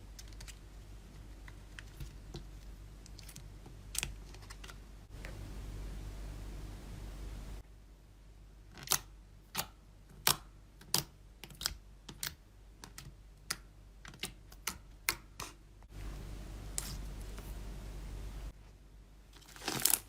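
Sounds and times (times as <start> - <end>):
soft steady rustle: 15.8 - 20.0.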